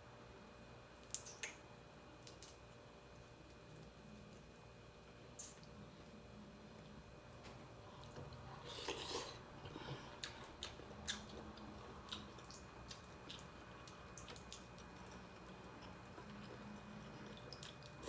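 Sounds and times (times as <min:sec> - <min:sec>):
wet chewing and mouth smacks: 0:10.2 - 0:18.0.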